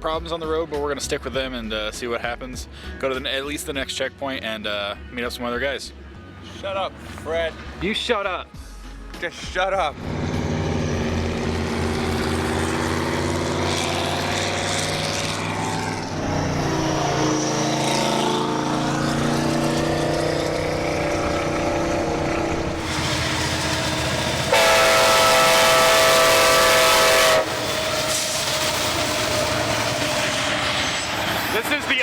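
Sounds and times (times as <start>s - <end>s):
vehicle engine running: 9.8s - 25.9s
train horn blast: 10.0s - 19.3s, 20.1s - 28.6s.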